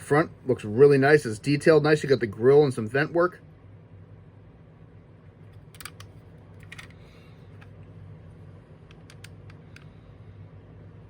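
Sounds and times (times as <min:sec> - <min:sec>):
steady low hum: 0:00.0 - 0:11.0
plastic action figure clicks: 0:05.8 - 0:06.9.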